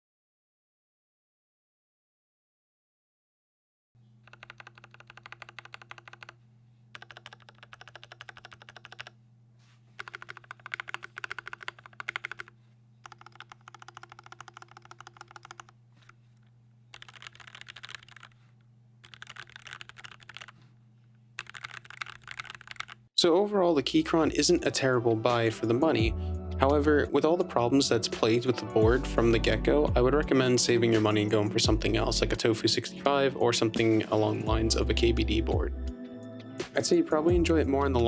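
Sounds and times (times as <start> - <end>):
typing on mechanical keyboard: 4.2 - 9.2, 10.0 - 16.2, 16.9 - 18.4, 19.0 - 20.6, 21.4 - 23.0.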